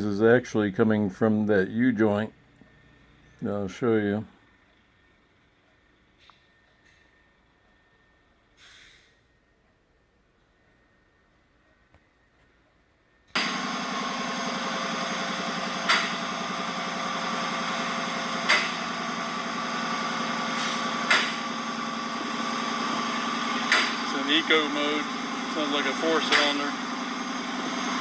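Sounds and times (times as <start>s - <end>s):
unmuffled car engine running: 13.4s - 28.0s
sharp engine knock: 20.7s - 21.6s, 23.2s - 24.1s, 26.2s - 26.8s.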